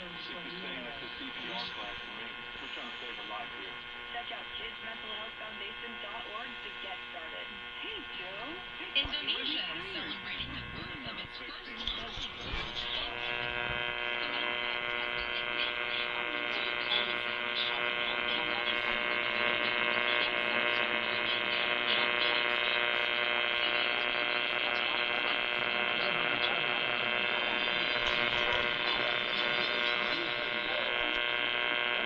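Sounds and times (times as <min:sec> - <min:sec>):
steady buzzy two-tone alert signal: 0:00.3 - 0:04.8.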